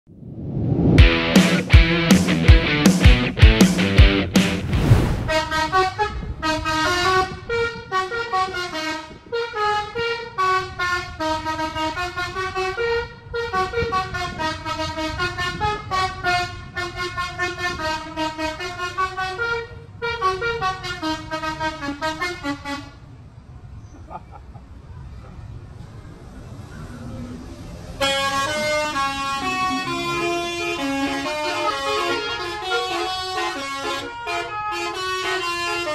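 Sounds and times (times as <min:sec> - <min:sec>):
musical air horn playing a tune: 0:05.3 - 0:22.9, 0:28.0 - 0:35.9.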